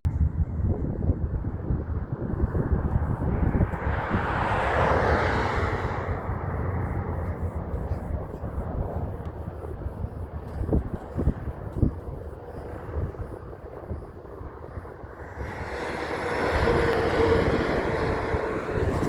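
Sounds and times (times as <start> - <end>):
steady low rumble: 0.0 - 19.0
vehicle passing: 2.2 - 8.8, 15.1 - 19.0.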